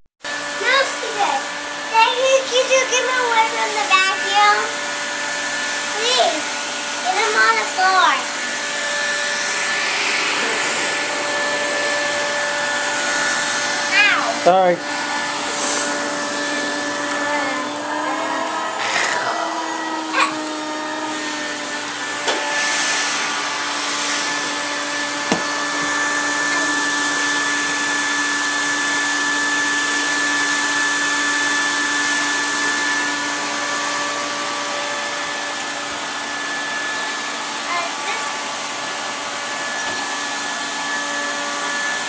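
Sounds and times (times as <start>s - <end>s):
vacuum cleaner running: 0.0s - 42.0s
vacuum cleaner knocks: 22.2s - 22.5s, 25.2s - 26.0s.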